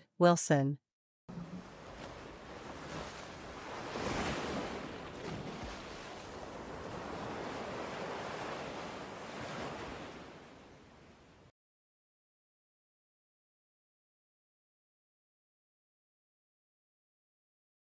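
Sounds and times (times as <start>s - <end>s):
ocean waves breaking: 1.3s - 11.5s.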